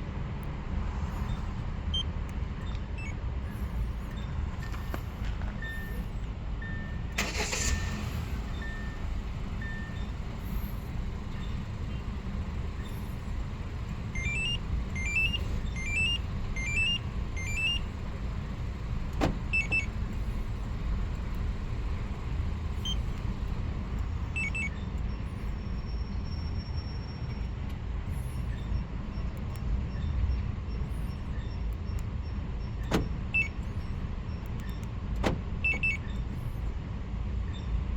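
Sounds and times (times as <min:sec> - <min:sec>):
low engine rumble: 0:00.4 - 0:37.9
short double beeps: 0:35.6 - 0:36.2.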